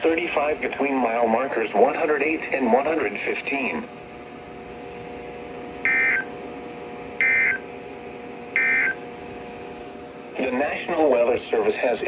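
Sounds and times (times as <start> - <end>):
low hum: 3.8 - 10.4
shrill warbling data bursts: 5.9 - 6.3, 7.2 - 7.6, 8.6 - 9.0.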